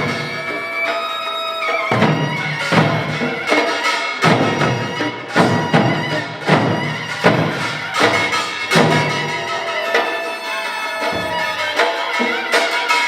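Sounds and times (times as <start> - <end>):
drums and gongs striking: 0.0 - 13.0
high wind instrument melody: 0.0 - 13.0.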